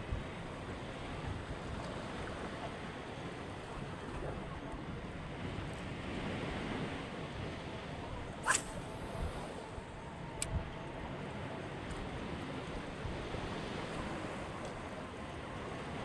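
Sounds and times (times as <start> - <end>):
water at sea's edge: 0.0 - 16.0
wind: 0.0 - 16.0
zip-like rasp: 8.4 - 8.9
faint click: 10.4 - 10.6.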